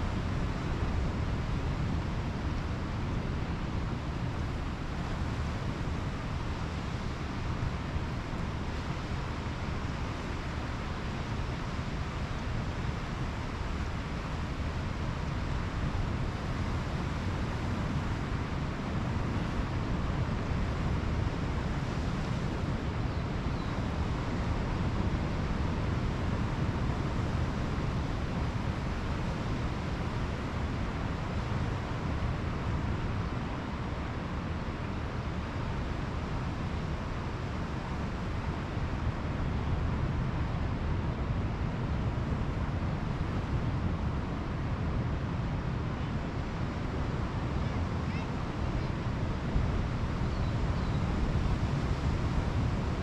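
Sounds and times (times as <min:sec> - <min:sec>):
wind rumbling on microphone: 0:00.0 - 0:53.0
ocean surf: 0:13.6 - 0:53.0.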